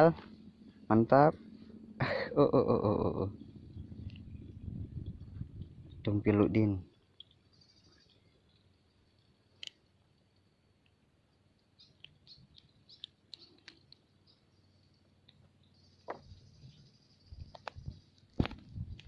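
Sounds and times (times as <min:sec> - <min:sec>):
faint high chirping: 0:06.7 - 0:18.3
small clicks: 0:06.9 - 0:16.4, 0:17.4 - 0:19.0.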